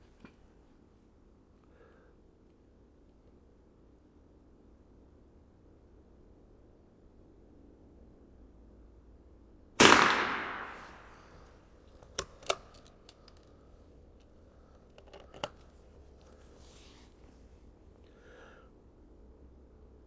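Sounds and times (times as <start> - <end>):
rifle shot with echo: 9.8 - 11.4
small sharp clicks: 11.9 - 13.6.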